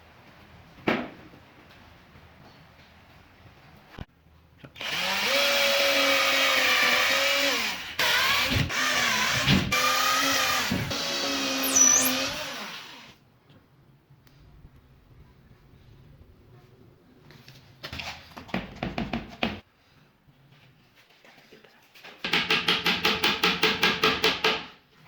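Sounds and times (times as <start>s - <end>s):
power drill whining: 4.8s - 13.2s
short high squeal: 11.6s - 12.4s.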